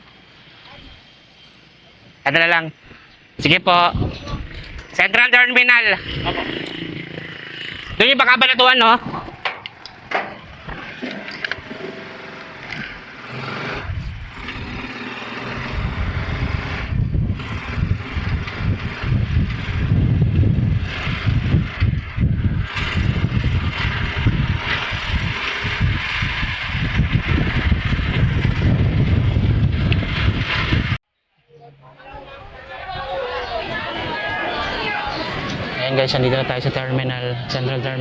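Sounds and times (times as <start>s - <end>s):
road and wind rumble: 0.0s - 31.0s, 32.2s - 38.0s
small motorcycle engine running: 5.7s - 8.2s, 9.2s - 31.0s.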